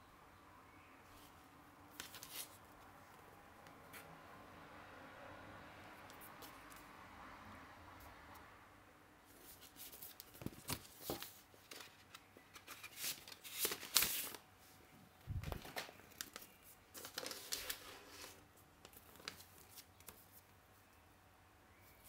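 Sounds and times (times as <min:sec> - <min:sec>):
rustling and crinkling: 0:01.2 - 0:03.3, 0:09.3 - 0:20.5.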